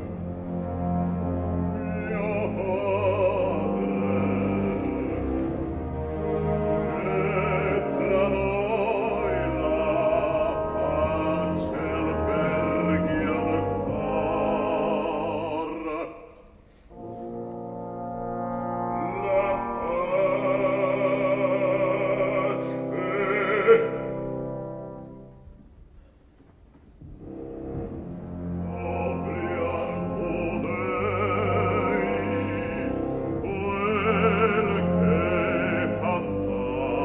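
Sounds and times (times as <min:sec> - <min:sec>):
full orchestra with low brass: 0:00.0 - 0:26.3, 0:26.9 - 0:37.0
operatic bass voice singing: 0:01.8 - 0:05.6, 0:06.8 - 0:16.4, 0:18.9 - 0:24.4, 0:28.6 - 0:37.0.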